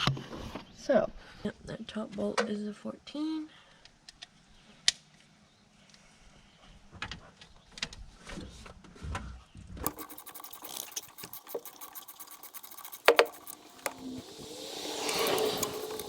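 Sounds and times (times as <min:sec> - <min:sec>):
socket ratchet clicking rapidly: 0:09.9 - 0:16.0.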